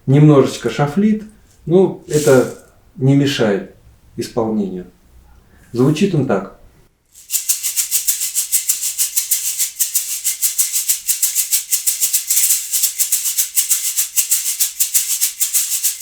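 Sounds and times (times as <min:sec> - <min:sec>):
shaker played in fast rhythm: 0:01.5 - 0:02.7, 0:07.1 - 0:16.0.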